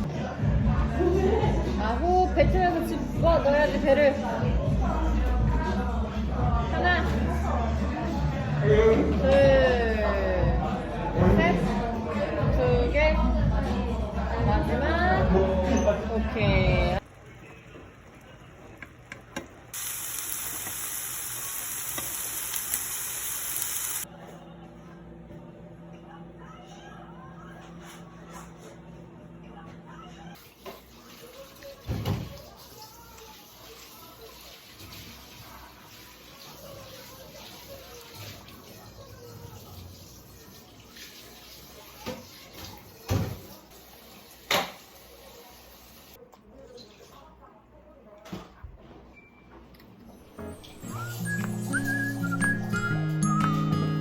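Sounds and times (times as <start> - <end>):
food sizzling in a frying pan: 19.6 - 24.1.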